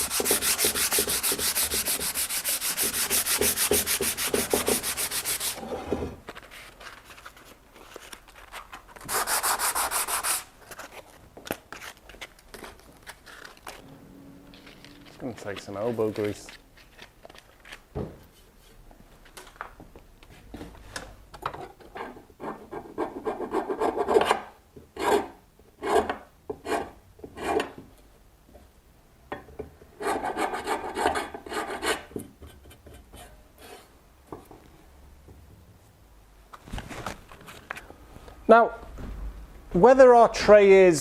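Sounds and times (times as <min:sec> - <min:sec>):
sandpaper scraping on stone: 0:00.0 - 0:05.6, 0:09.1 - 0:10.5.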